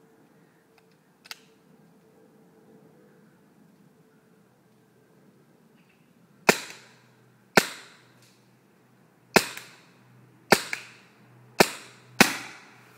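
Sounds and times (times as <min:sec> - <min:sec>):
paintball pistol shots: 0:06.5 - 0:07.0, 0:07.6 - 0:08.1, 0:09.3 - 0:09.9, 0:10.5 - 0:11.0, 0:11.6 - 0:12.8.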